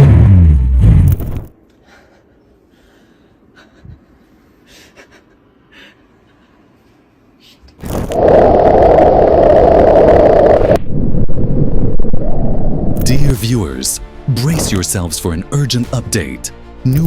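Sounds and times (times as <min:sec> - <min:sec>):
faint breathing: 0:01.7 - 0:03.6.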